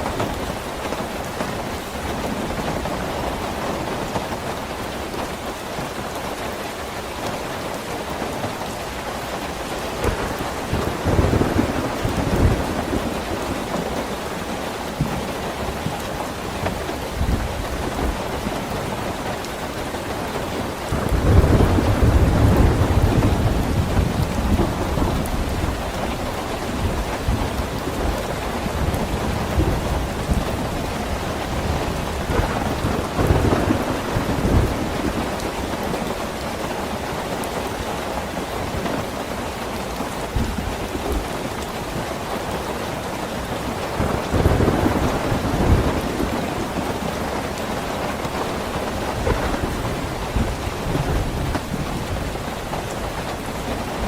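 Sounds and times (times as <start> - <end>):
heavy rain falling: 0.0 - 54.0
thunder rumbling: 9.7 - 36.9, 39.8 - 54.0.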